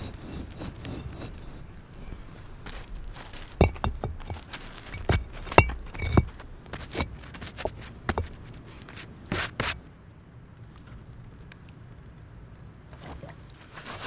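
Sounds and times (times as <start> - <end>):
objects knocking and clicking: 0.0 - 9.8.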